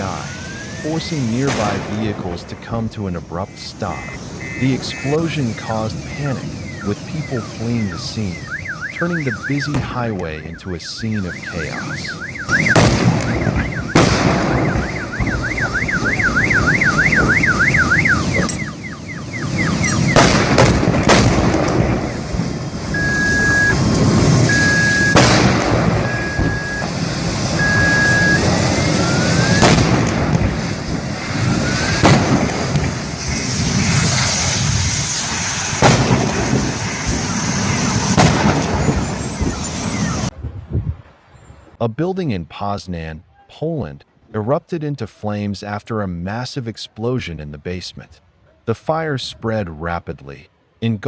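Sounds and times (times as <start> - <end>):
wailing alarm: 0.0 - 1.1, 3.9 - 9.7, 11.0 - 20.2, 22.0 - 25.2, 25.9 - 29.6, 31.4 - 32.0
sharp bangs from vehicle fire: 0.0 - 2.9, 4.0 - 10.3, 11.3 - 40.3
rush of fire: 0.0 - 41.8
traffic noise: 0.0 - 45.0
even beeps: 3.4 - 20.3, 22.9 - 25.2, 26.0 - 29.7.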